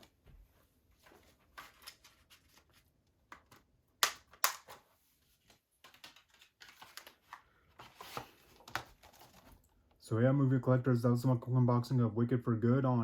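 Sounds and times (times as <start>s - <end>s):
sharp clicks of plastic case: 3.3s - 4.8s.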